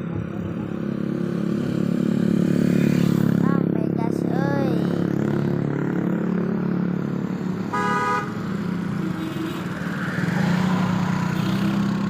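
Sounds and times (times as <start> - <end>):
multi-tone air horn toot: 7.7 - 8.4.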